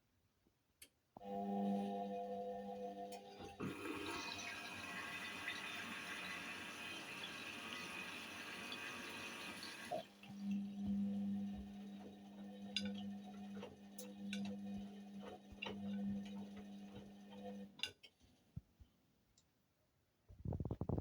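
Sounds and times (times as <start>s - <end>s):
washing machine humming: 2.9s - 17.8s.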